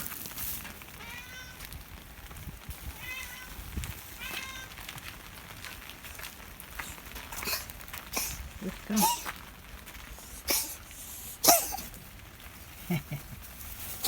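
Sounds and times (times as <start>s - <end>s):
cat meowing: 1.0s - 1.7s, 2.9s - 4.8s.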